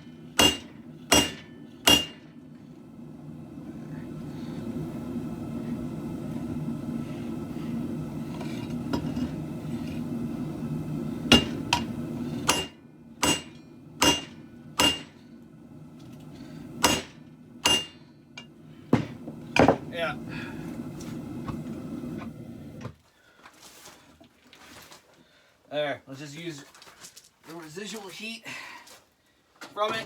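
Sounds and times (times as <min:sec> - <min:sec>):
forge burner rushing: 0:00.0 - 0:22.9.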